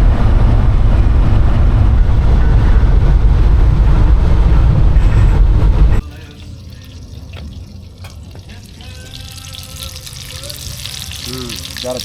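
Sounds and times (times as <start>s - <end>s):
pickup engine and road rumble: 0.0s - 12.0s.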